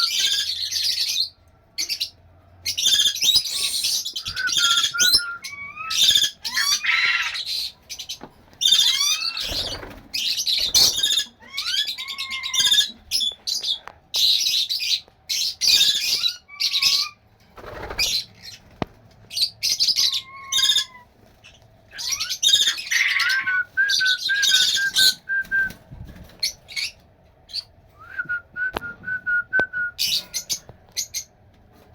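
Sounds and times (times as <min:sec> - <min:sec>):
parrot screeching: 0:02.8 - 0:07.7, 0:08.6 - 0:13.0, 0:15.6 - 0:17.2, 0:19.6 - 0:21.1, 0:21.9 - 0:25.2
sliding whistled bird notes: 0:03.4 - 0:06.3, 0:22.7 - 0:25.8.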